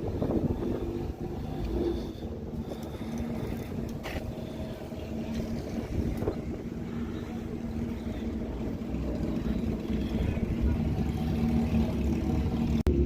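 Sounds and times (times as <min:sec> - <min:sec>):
wind on microphone: 0:00.0 - 0:08.0
car engines idling: 0:00.0 - 0:13.0
steady hum: 0:00.0 - 0:13.0.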